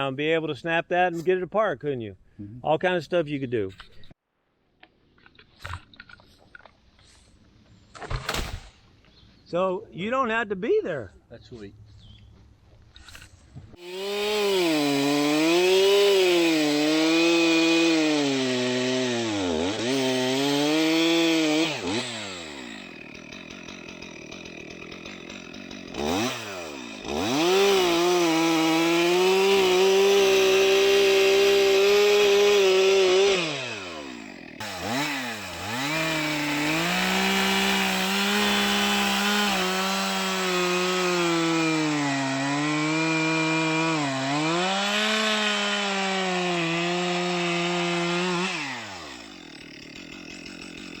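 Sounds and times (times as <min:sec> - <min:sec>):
chainsaw cutting wood: 0:13.8 - 0:51.0.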